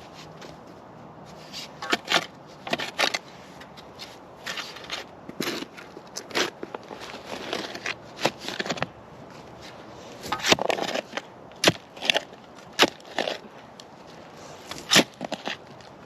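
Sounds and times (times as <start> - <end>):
gritty scraping: 0.0 - 16.0
digging tool striking soil: 1.6 - 3.2, 10.2 - 13.4, 14.7 - 15.6.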